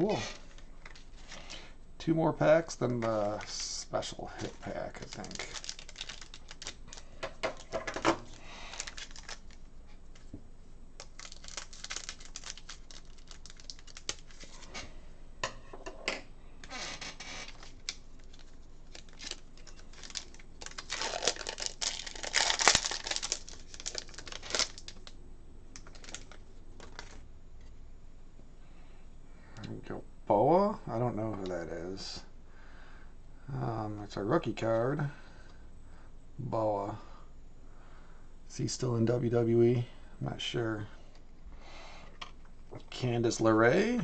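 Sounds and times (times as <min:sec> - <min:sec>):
foil wrapper crinkling and tearing: 0:02.8 - 0:10.3, 0:11.0 - 0:14.7, 0:17.2 - 0:27.2.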